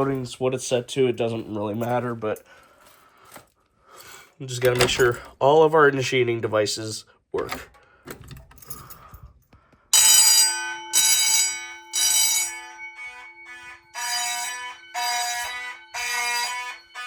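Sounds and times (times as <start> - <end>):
fire alarm horn blasts: 10.0 - 17.0.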